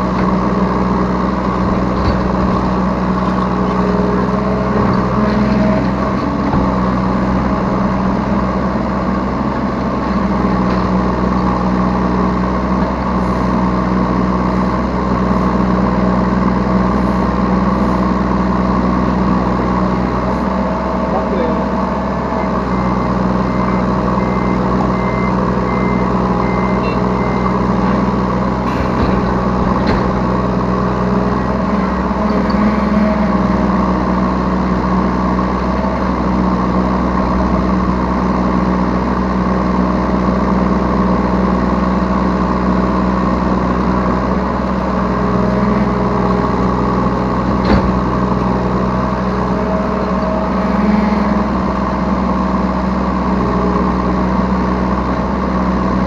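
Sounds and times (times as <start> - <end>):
excavator diesel engine running: 0.0 - 56.0
faint short beeps: 23.6 - 27.5
sharp clicks and knocks: 28.7 - 30.3.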